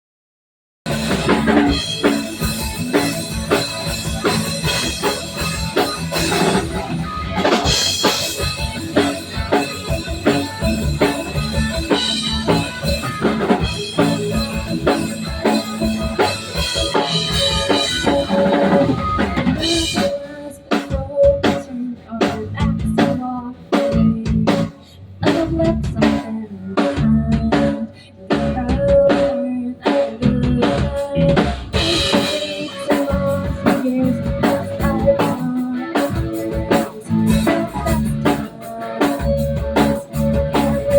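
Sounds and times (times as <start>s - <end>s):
drum hits: 0.9s - 20.1s
instrumental band music: 0.9s - 40.9s.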